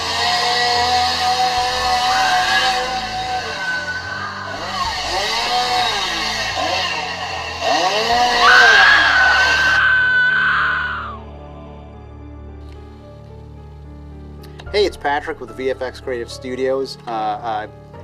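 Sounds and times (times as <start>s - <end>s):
chainsaw revving through speaker: 0.0s - 10.4s
long high scream: 1.8s - 6.8s, 7.4s - 11.3s.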